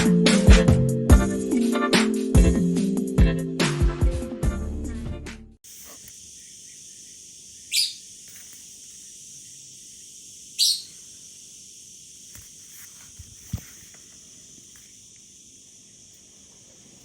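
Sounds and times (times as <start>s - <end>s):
high-pitched outdoor hiss: 5.6s - 17.0s
high bird chirps: 6.3s - 12.0s.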